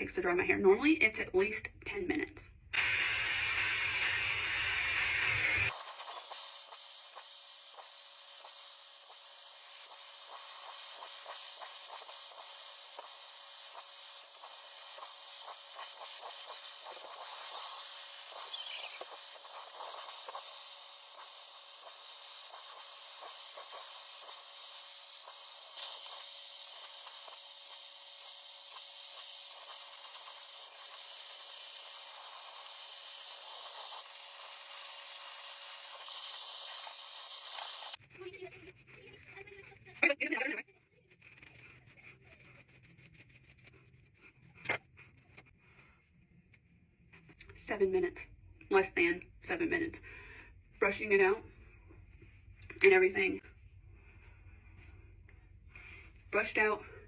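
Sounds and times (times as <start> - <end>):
hair dryer running: 2.7 - 6.0.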